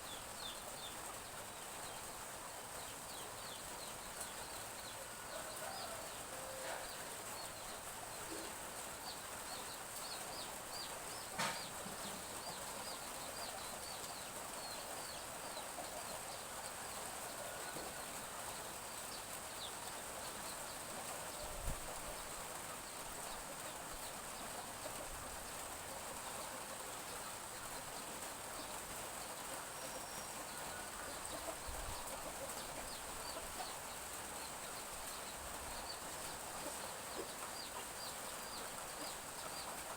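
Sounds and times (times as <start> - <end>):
light drizzle hiss: 0.0 - 39.9
chicks peeping: 8.3 - 22.2, 28.6 - 39.9.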